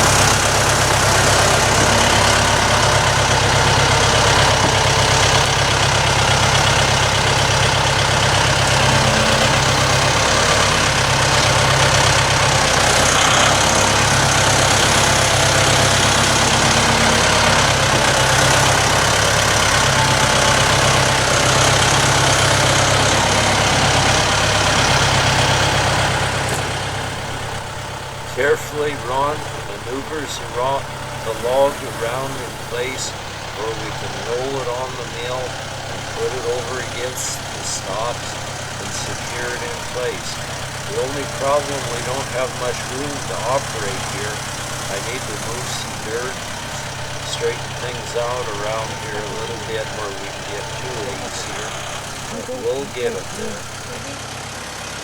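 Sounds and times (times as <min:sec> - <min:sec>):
loader engine running: 0:00.0 - 0:55.0.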